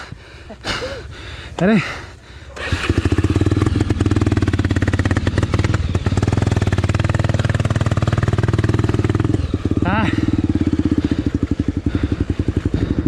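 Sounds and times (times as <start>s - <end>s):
motorcycle engine idling: 0.0s - 13.0s.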